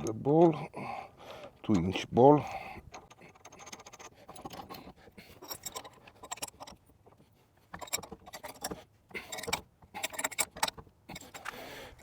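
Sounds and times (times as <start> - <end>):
metal parts clinking and rattling: 2.9 - 6.9, 7.7 - 11.5.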